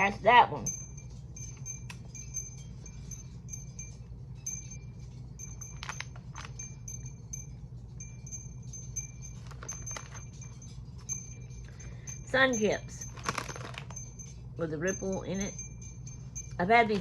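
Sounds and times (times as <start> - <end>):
faint high chiming tones: 0.0 - 17.0
steady low hum: 0.0 - 17.0
rustles or crunches: 13.0 - 14.0.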